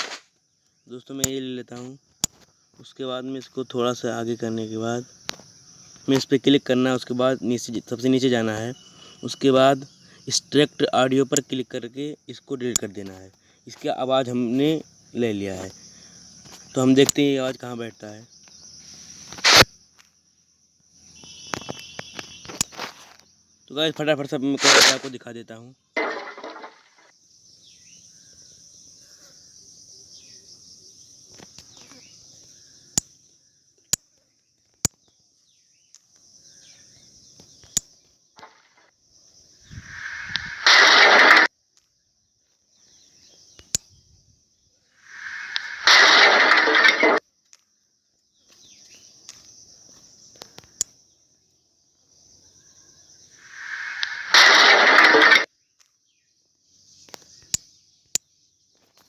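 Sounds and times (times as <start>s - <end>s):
high-pitched hiss: 0.0s - 0.4s, 15.2s - 19.8s, 24.4s - 25.2s, 38.4s - 41.5s, 44.8s - 47.2s, 52.2s - 55.5s
sharp clicks: 19.3s - 19.7s, 39.9s - 41.9s, 45.1s - 47.2s, 53.4s - 55.5s.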